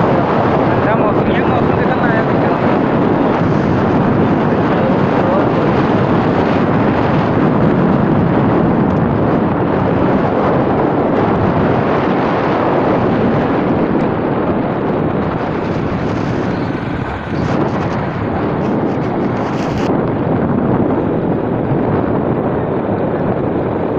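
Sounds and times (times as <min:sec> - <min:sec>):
road noise: 0:00.0 - 0:23.9
wind rushing over microphone: 0:00.0 - 0:23.9
motorcycle engine: 0:12.9 - 0:20.4.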